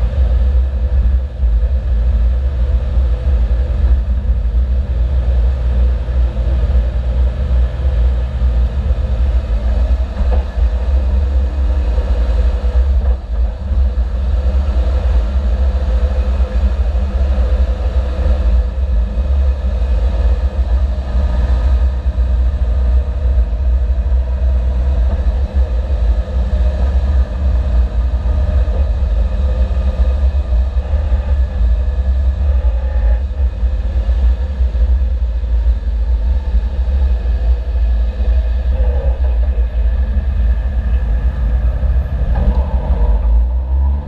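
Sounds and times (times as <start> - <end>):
car engine and road noise: 0.0 - 44.0
low hum: 0.0 - 44.0.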